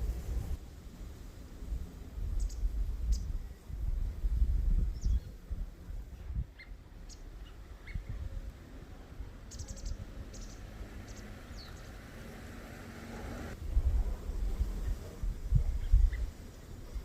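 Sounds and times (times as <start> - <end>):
small birds chirping: 2.4 - 3.7, 4.7 - 13.6, 14.7 - 17.0.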